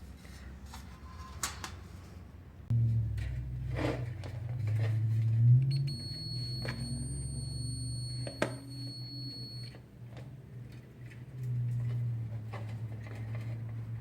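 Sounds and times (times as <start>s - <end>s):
multimeter continuity beep: 5.6s - 9.8s.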